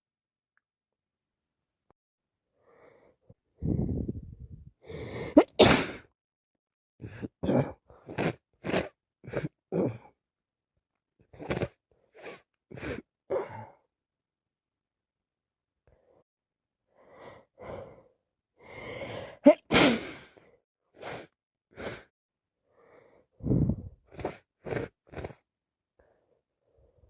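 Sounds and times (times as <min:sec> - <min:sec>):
woman sneezing: 0:05.4 - 0:06.0, 0:19.5 - 0:20.2.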